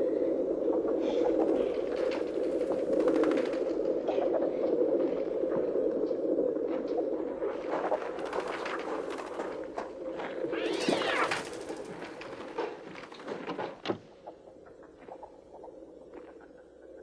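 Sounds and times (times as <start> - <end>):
electronic bird squawks and clicks: 10.5 - 11.6
loud rising and falling screech: 10.5 - 11.8.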